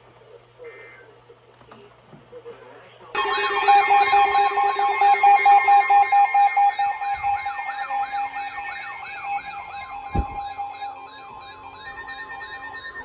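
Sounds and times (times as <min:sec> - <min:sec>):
long steady warning tone: 0:03.2 - 0:13.0
rapid beeping: 0:03.2 - 0:13.0
warbling siren-like tones: 0:03.2 - 0:13.0.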